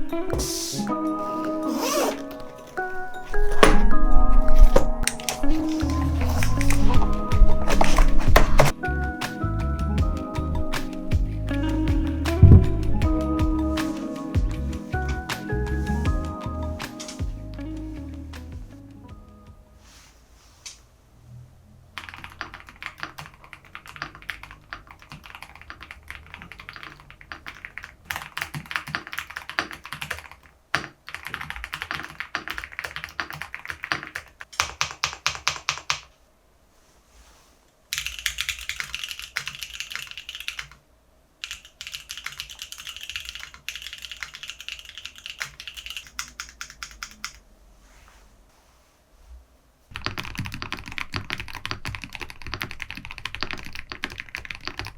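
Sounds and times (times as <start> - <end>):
fast mechanical keyboard typing: 22.0 - 36.1, 37.9 - 40.8, 41.4 - 47.4, 49.9 - 54.9.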